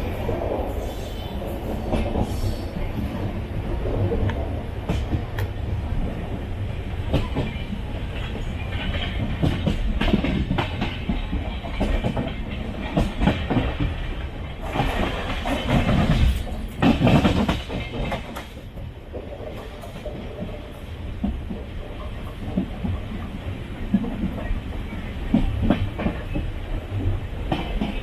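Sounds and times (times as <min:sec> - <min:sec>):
train rumbling on rails: 0:00.0 - 0:28.0
wheels clicking over rail joints: 0:07.0 - 0:20.6.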